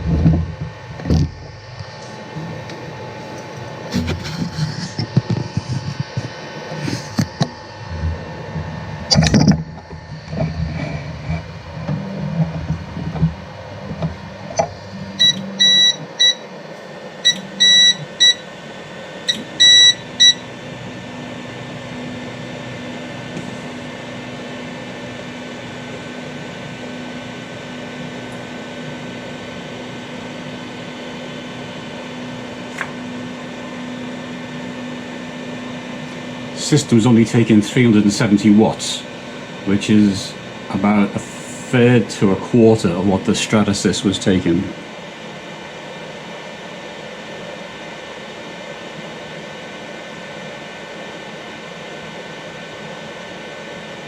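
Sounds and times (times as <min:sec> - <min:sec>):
fan hum: 0:00.0 - 0:54.0
short electronic beeps: 0:15.2 - 0:16.4, 0:17.2 - 0:18.5, 0:19.3 - 0:20.4.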